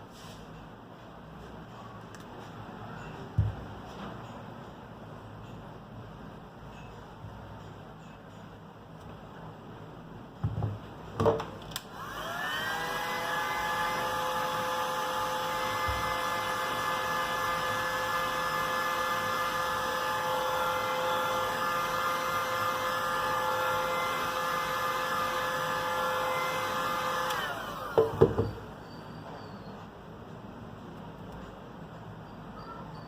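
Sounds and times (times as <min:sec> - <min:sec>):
small electric motor whine: 0:12.0 - 0:28.6.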